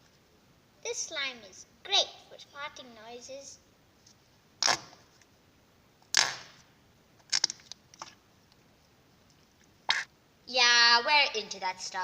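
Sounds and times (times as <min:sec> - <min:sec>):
slime squelching and popping: 0:04.6 - 0:05.0, 0:06.1 - 0:06.6, 0:07.2 - 0:08.2, 0:09.9 - 0:10.1.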